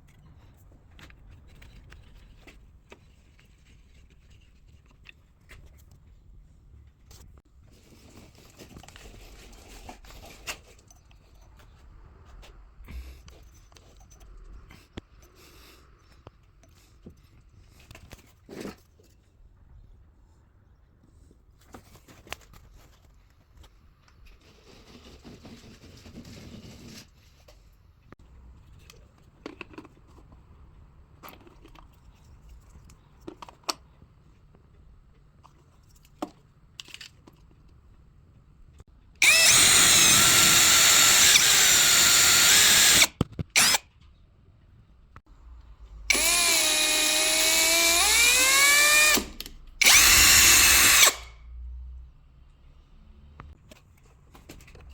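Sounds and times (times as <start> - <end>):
electric drill whining: 39.2 - 43.8, 46.1 - 51.3.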